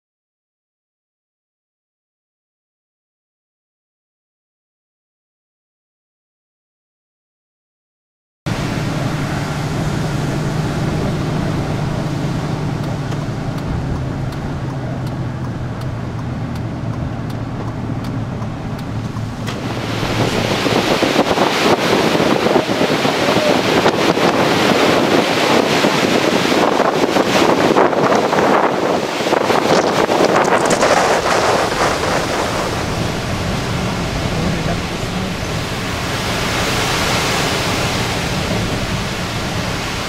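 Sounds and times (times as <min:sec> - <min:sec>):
steady low hum: 0:08.5 - 0:21.2
strong wind buffeting microphone: 0:08.5 - 0:40.0
surf: 0:08.5 - 0:40.0.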